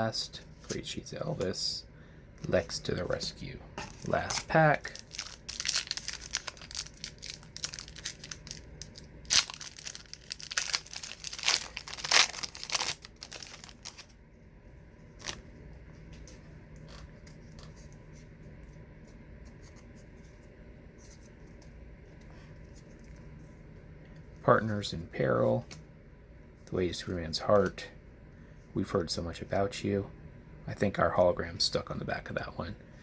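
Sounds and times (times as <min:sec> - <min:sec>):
wrapper tearing and crinkling: 0:04.0 - 0:14.1.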